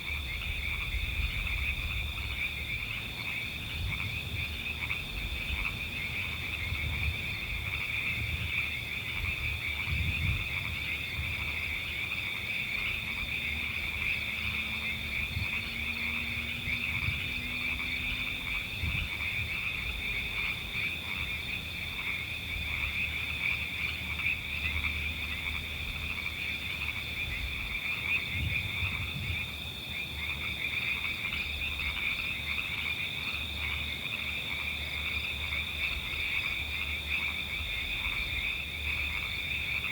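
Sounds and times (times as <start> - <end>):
frogs calling: 0.0 - 39.9.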